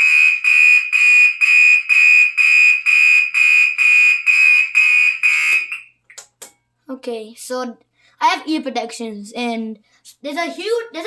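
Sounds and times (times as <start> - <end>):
pulsed fire alarm horn: 0.0 - 6.0.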